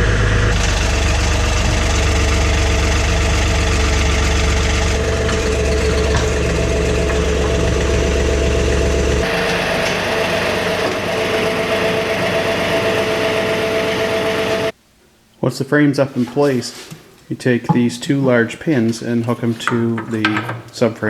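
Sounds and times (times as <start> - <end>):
diesel engine rumble: 0.0 - 14.7
steady whine: 0.0 - 14.8.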